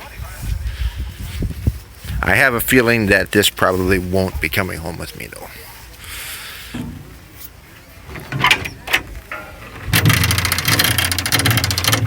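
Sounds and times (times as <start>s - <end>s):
tractor diesel engine running: 6.1s - 12.0s.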